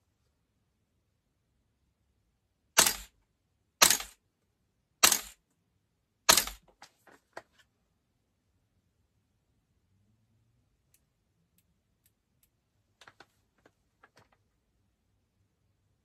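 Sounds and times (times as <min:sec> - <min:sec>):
airsoft gun shots: 0:02.8 - 0:03.1, 0:03.8 - 0:04.2, 0:05.0 - 0:05.4, 0:06.3 - 0:06.6.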